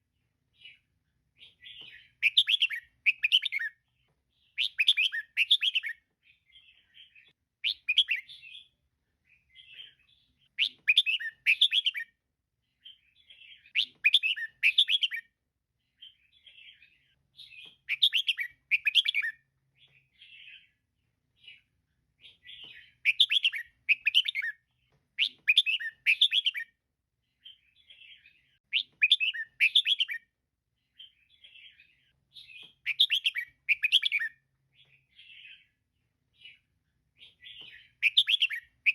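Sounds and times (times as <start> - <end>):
bird chirping: 0.0 - 38.9.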